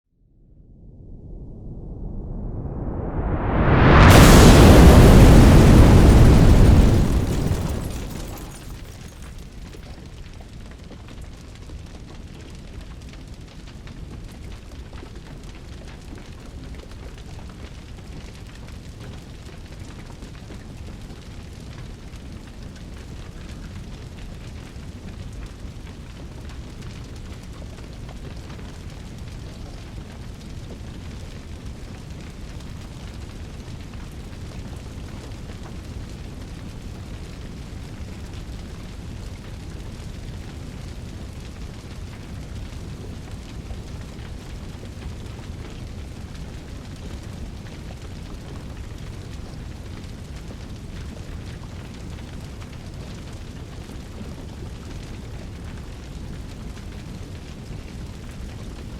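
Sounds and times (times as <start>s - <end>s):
low rumble of burning flames: 0.3s - 58.9s
rush rising in pitch: 0.4s - 8.1s
loud explosion blast: 0.7s - 9.3s.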